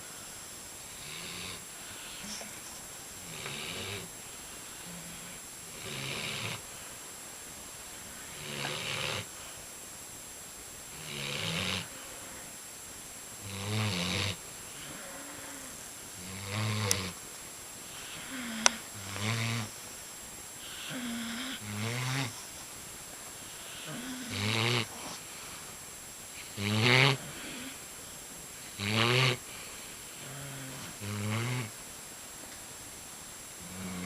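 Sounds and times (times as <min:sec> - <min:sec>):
dog snoring: 0:00.0 - 0:06.8, 0:08.2 - 0:09.6, 0:10.9 - 0:12.5, 0:13.4 - 0:17.2, 0:17.8 - 0:20.0, 0:20.6 - 0:22.6, 0:23.4 - 0:25.7, 0:26.4 - 0:27.8, 0:28.7 - 0:31.8, 0:33.6 - 0:34.0.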